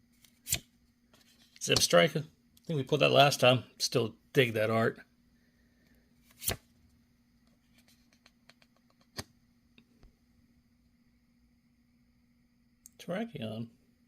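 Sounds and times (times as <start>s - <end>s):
trading cards sliding: 6.2s - 6.7s
sharp card flick: 6.3s - 6.6s.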